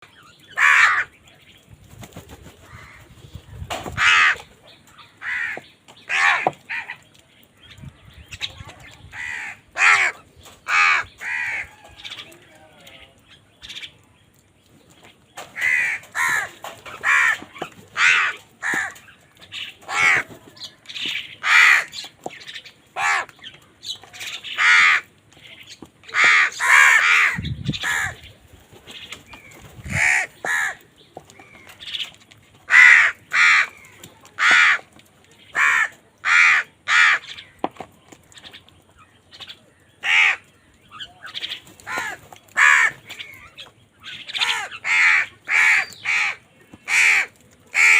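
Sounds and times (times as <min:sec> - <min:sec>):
crows cawing: 0:00.5 - 0:01.1, 0:02.7 - 0:03.1, 0:03.9 - 0:04.5, 0:05.2 - 0:07.0, 0:09.1 - 0:12.3, 0:15.4 - 0:19.2, 0:19.8 - 0:20.4, 0:21.4 - 0:22.0, 0:23.0 - 0:23.4, 0:24.2 - 0:25.1, 0:26.0 - 0:28.2, 0:29.9 - 0:31.8, 0:32.7 - 0:34.9, 0:35.5 - 0:37.7, 0:40.0 - 0:40.5, 0:41.8 - 0:43.5, 0:44.3 - 0:47.9.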